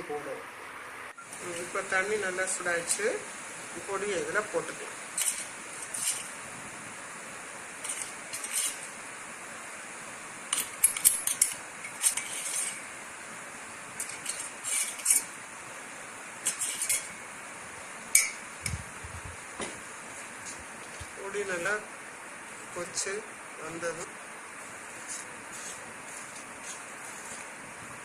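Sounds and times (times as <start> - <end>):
steady faint hiss: 0.0 - 28.0
metal spoon clinking on steel: 10.5 - 12.8, 18.2 - 18.4.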